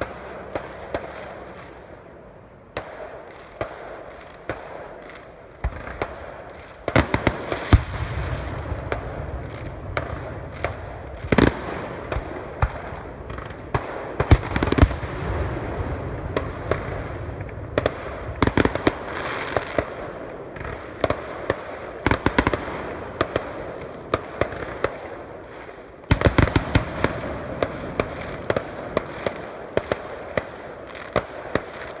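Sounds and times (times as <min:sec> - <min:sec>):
fireworks bangs and crackling: 0:00.0 - 0:32.0
continuous rumble: 0:05.6 - 0:19.1.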